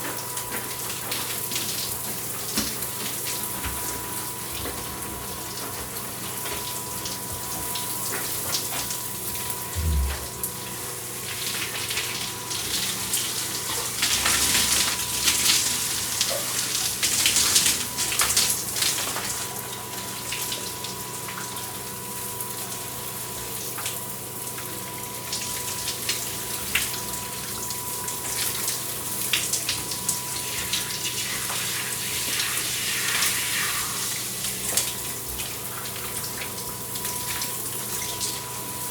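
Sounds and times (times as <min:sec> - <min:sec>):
low thud: 0:09.8 - 0:10.4
shower water spray hissing: 0:30.7 - 0:34.5.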